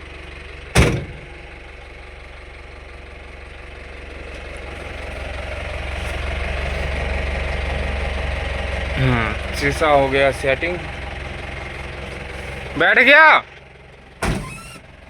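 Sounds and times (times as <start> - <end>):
vehicle engine idling: 0.0 - 15.0
loud thump: 0.8 - 1.3, 14.2 - 14.8.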